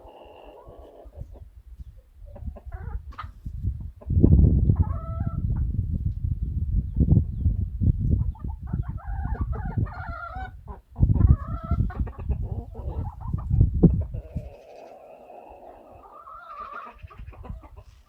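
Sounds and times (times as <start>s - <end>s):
hens clucking: 0.0s - 1.5s, 2.3s - 5.6s, 8.0s - 18.0s.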